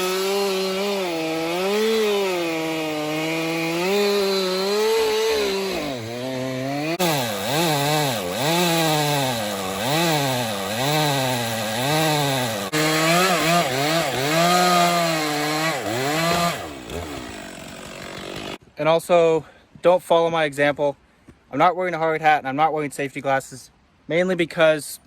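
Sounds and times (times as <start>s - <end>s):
chainsaw cutting log: 0.0s - 18.6s.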